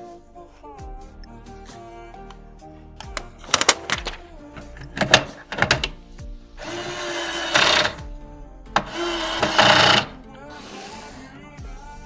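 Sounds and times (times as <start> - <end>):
clicks of computer parts handled: 3.0 - 6.0, 6.6 - 8.0, 8.8 - 11.1
small electric motor whirring: 6.6 - 8.1, 8.8 - 11.2
soft background music: 6.6 - 8.1.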